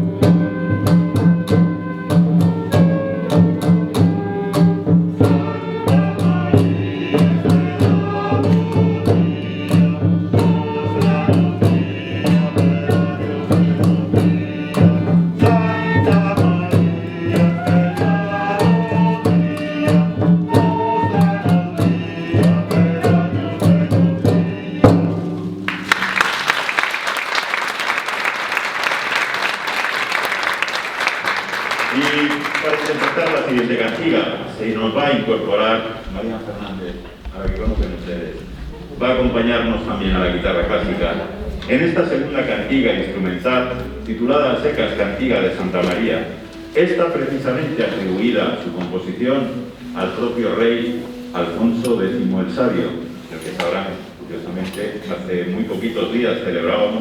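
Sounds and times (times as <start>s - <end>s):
early music ensemble playing: 0.0s - 57.0s
audience applause: 25.7s - 34.2s
steady drum beat: 36.0s - 42.7s.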